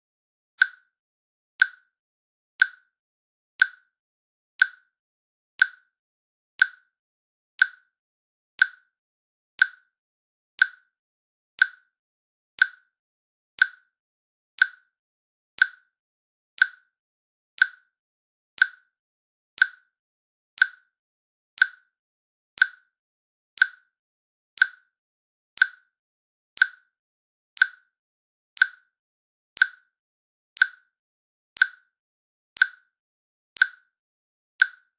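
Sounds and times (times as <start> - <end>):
timer ticking: 0.6 - 1.0, 1.6 - 2.0, 2.6 - 3.0, 3.6 - 4.0, 4.6 - 5.0, 5.6 - 6.0, 6.6 - 7.0, 7.6 - 8.0, 8.6 - 9.0, 9.6 - 10.0, 10.6 - 11.0, 11.6 - 12.0, 12.6 - 13.0, 13.6 - 14.0, 14.6 - 15.0, 15.6 - 16.0, 16.6 - 17.0, 17.6 - 18.0, 18.6 - 19.0, 19.6 - 20.0, 20.6 - 21.0, 21.6 - 22.0, 22.6 - 23.0, 23.6 - 24.0, 24.6 - 25.0, 25.6 - 26.0, 26.6 - 27.0, 27.6 - 28.0, 28.6 - 29.0, 29.6 - 30.0, 30.6 - 31.0, 31.6 - 32.0, 32.6 - 33.0, 33.6 - 34.0, 34.6 - 34.9.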